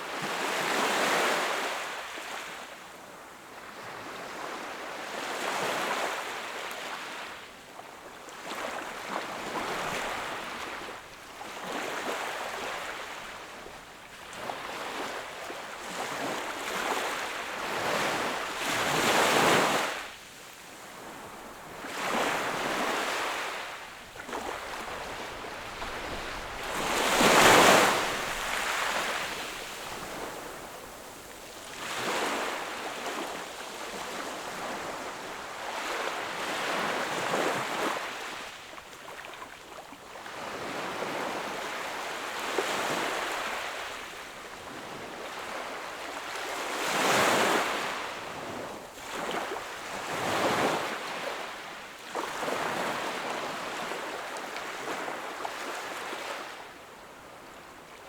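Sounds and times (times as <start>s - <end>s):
sea waves breaking on shore: 20.8s - 38.6s.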